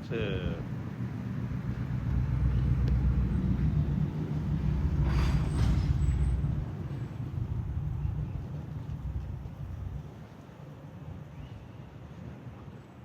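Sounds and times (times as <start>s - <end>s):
large vehicle engine rumbling: 0.0s - 10.4s.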